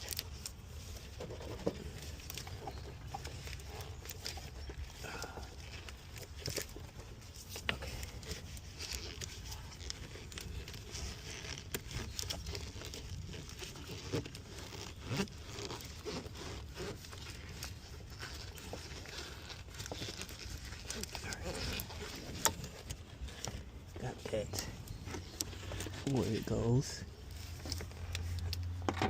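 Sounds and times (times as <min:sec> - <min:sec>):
plastic parts clicking and scraping: 0:00.0 - 0:29.0.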